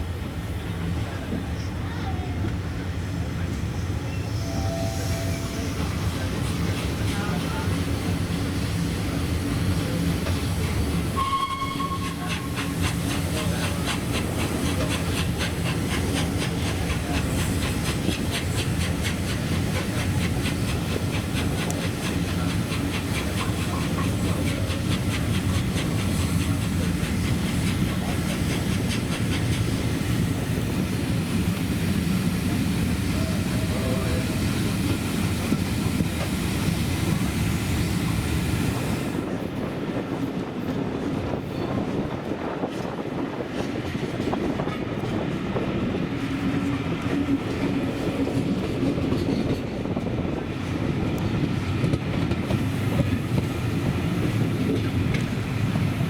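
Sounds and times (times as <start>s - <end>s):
steam train running noise: 0.0s - 56.0s
steam hissing: 5.8s - 39.2s, 52.4s - 56.0s.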